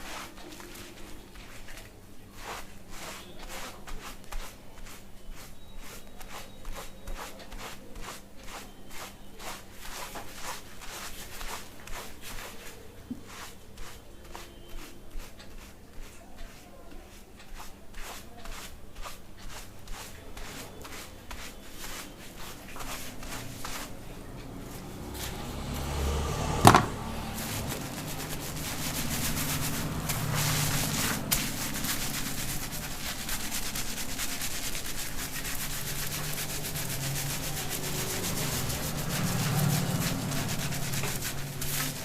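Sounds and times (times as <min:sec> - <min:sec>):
fingertips scratching hair: 0:00.0 - 0:42.0.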